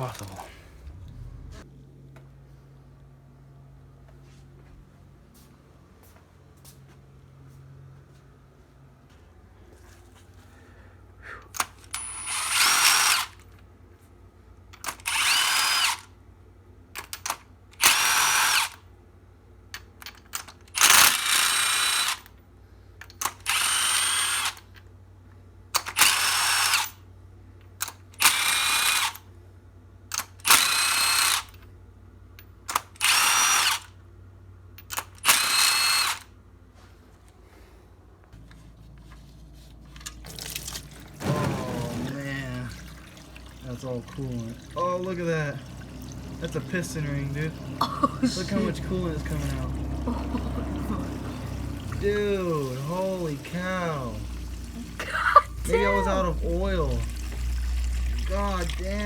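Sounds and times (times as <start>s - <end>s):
electric power drill whining: 12.0s - 13.4s, 15.0s - 16.0s, 17.8s - 18.7s, 20.9s - 22.3s, 23.5s - 24.6s, 35.2s - 36.2s.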